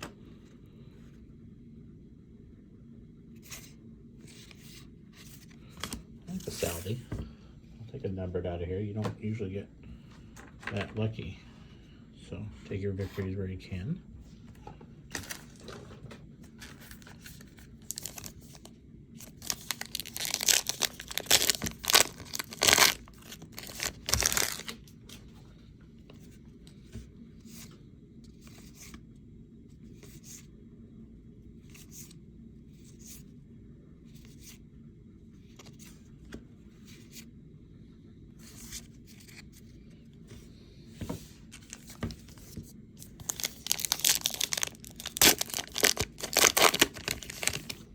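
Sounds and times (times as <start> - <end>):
cards being flipped through: 15.1 - 15.8, 16.4 - 25.2, 38.4 - 39.7, 41.0 - 47.9
wrapper tearing and crinkling: 16.7 - 18.5, 19.2 - 24.8, 43.1 - 47.9.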